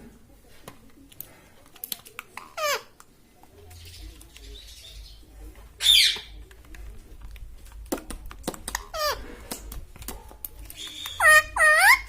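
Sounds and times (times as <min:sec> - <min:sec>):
parakeet screeching: 0:11.1 - 0:12.0.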